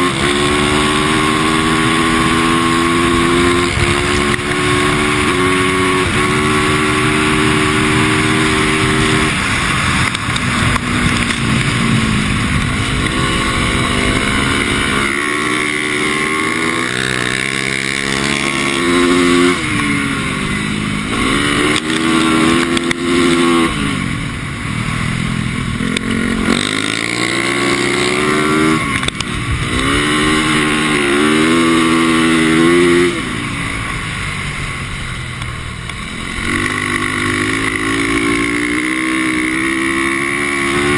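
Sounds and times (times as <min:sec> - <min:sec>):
dirt bike engine revving: 0:00.0 - 0:40.9.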